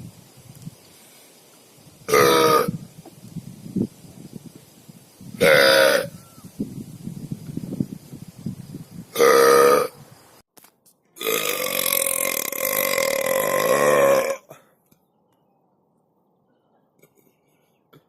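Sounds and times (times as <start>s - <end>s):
person burping: 2.1s - 2.7s, 5.4s - 6.1s, 9.2s - 9.9s, 11.2s - 14.6s.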